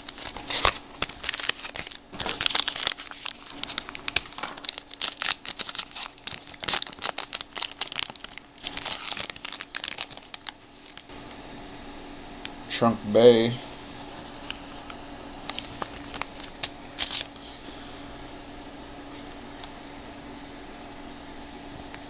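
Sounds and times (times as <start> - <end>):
plastic wrapping torn and crumpled: 0.0 - 11.1, 15.4 - 17.4.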